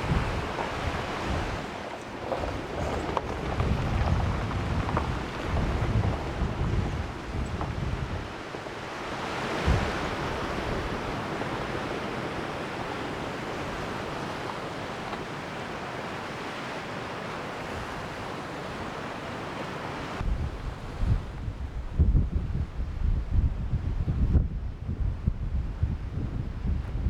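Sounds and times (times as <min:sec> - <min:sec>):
strong wind rushing: 0:00.0 - 0:08.3, 0:09.4 - 0:14.4, 0:20.0 - 0:27.0.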